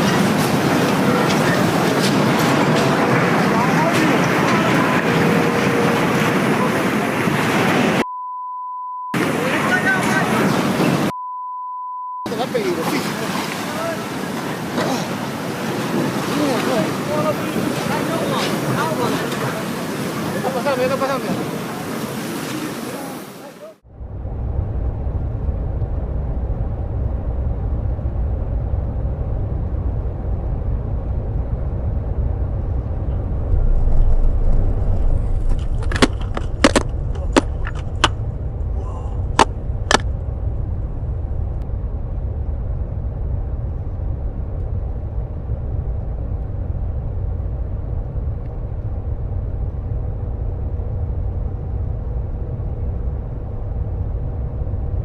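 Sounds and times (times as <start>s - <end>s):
low rumble: 23.8s - 55.0s.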